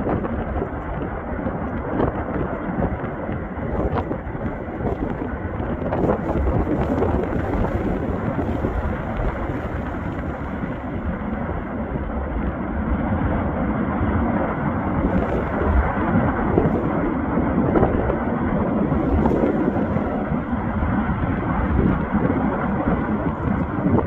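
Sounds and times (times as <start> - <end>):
volcanic eruption rumbling roar: 0.0 - 24.0.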